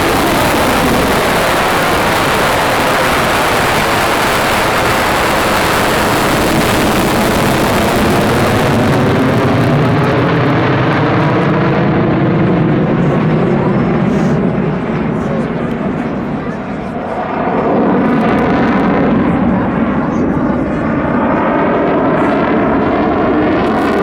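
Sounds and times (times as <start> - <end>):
jet engine roar: 0.0 - 24.0.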